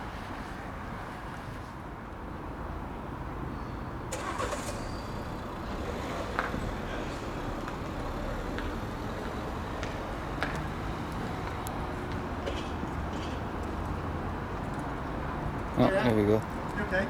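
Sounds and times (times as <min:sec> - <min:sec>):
vehicle engine rumbling: 0:04.1 - 0:15.0.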